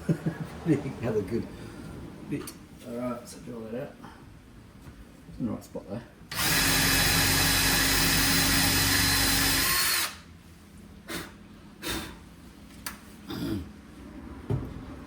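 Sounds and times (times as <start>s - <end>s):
power drill boring: 6.3s - 10.2s.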